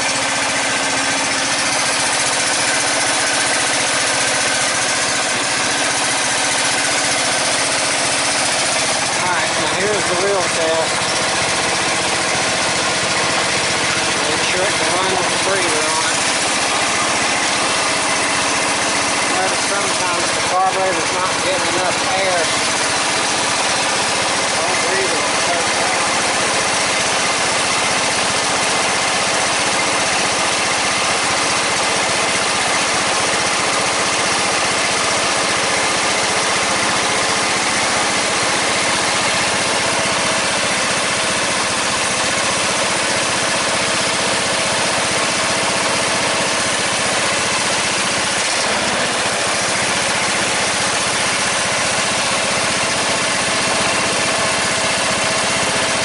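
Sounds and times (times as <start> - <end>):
riding tractor engine running: 0.0 - 56.0.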